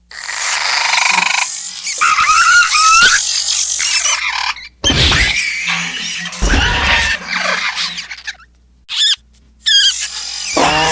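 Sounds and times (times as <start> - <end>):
raspy rattling creature chitter: 0.1 - 4.6
sharp squealing cry: 1.8 - 10.9
high squealing creature chirps: 1.9 - 8.3, 8.9 - 10.9
heavy low thump: 6.4 - 7.2.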